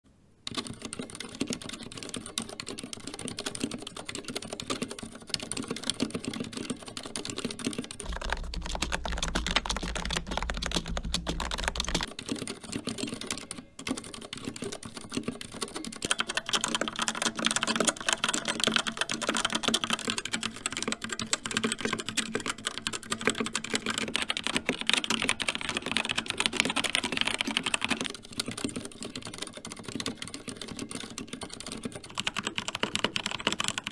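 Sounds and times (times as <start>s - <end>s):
keyboard typing: 0.5s - 33.9s
low hum: 8.1s - 12.0s.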